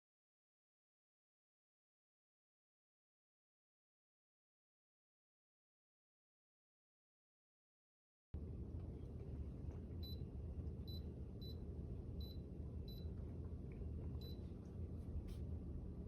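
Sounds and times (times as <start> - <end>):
steady low rumble: 8.4 - 16.0.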